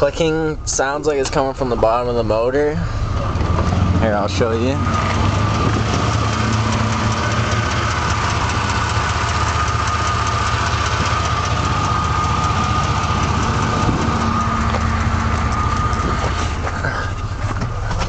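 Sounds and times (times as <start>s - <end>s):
truck engine idling roughly: 0.0s - 18.0s
quick regular engine clicking: 4.3s - 18.0s.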